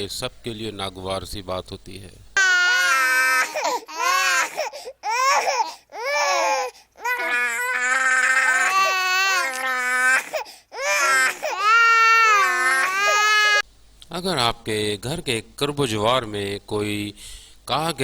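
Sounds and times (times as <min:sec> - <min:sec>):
newborn baby crying: 0:02.4 - 0:13.6.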